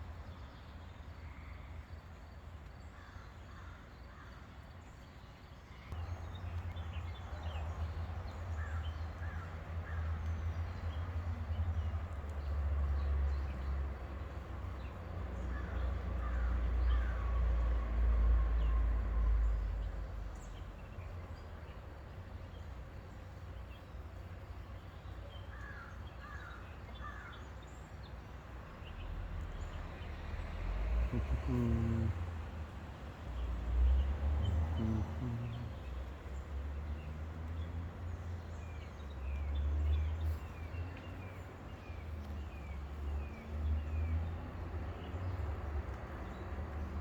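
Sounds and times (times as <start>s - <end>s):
low engine rumble: 28.7s - 47.0s.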